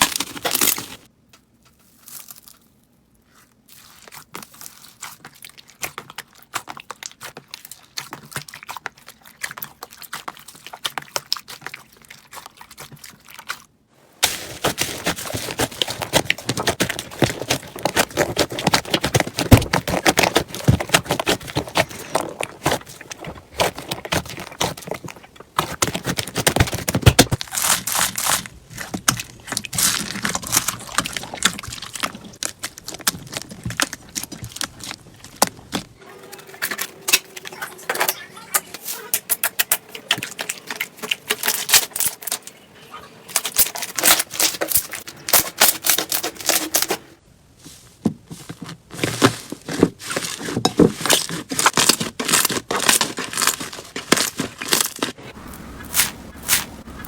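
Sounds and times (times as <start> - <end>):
slime crackling and popping: 14.2 - 36.0.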